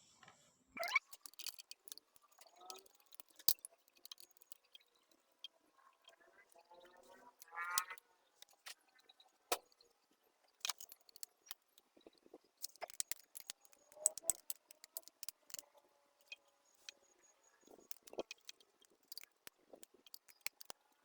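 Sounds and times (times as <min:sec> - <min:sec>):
metallic clicks of tools and bolts: 0:00.8 - 0:06.2, 0:10.6 - 0:21.0.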